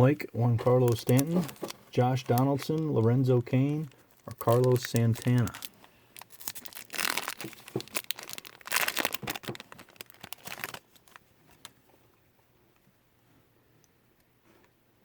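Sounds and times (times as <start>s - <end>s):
wrapper tearing and crinkling: 0.8s - 2.8s, 3.8s - 11.7s.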